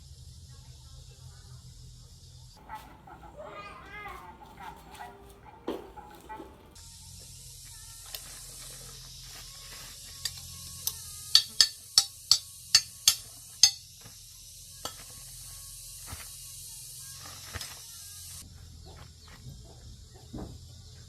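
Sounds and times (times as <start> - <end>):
steady high hiss: 6.8 - 18.5.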